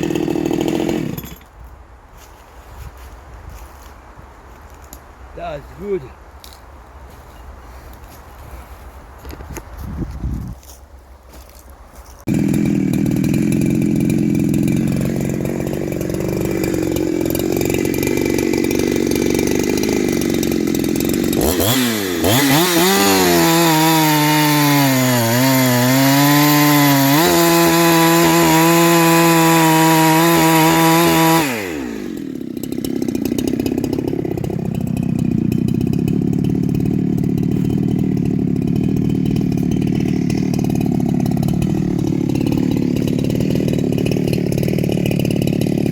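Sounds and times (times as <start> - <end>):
chainsaw idling and revving: 0.0 - 1.5, 12.2 - 45.9.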